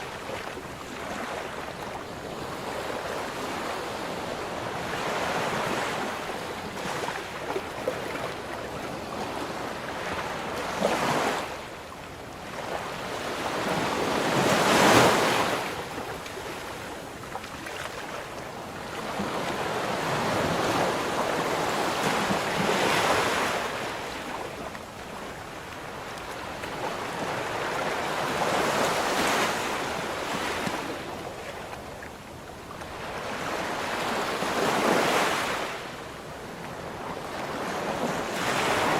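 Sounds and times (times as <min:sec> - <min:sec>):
sea waves breaking: 0:17.4 - 0:32.1, 0:32.7 - 0:36.0.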